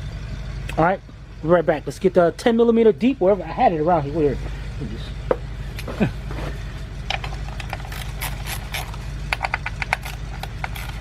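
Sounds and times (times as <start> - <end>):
low hum: 0.0 - 11.0
metal tools clinking: 7.1 - 11.0.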